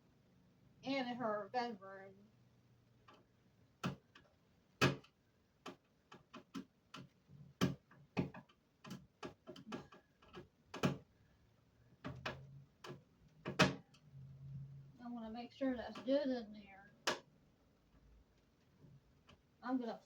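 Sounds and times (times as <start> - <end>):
clicks and light knocks: 3.0 - 11.1.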